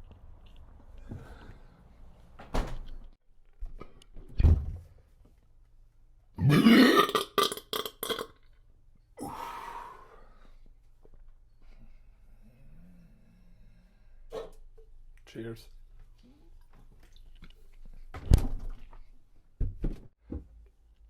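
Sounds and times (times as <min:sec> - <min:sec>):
man burping: 0:06.4 - 0:08.3
soft breathy sound: 0:09.2 - 0:14.4.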